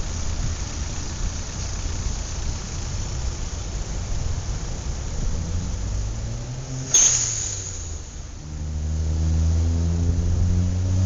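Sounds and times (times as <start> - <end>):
vehicle engines running: 0.0 - 11.0
vehicle passing: 4.8 - 11.0.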